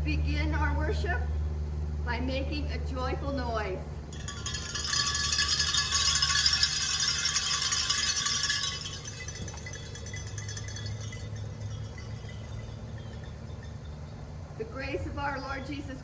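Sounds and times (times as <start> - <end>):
hand bells jingling: 4.1 - 14.1.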